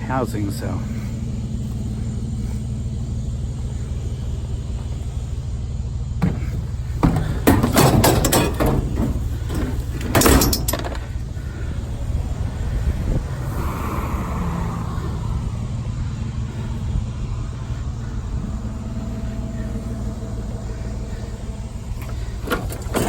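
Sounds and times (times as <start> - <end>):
vehicle engine idling: 0.0 - 23.0
items knocking and clattering: 6.2 - 11.1.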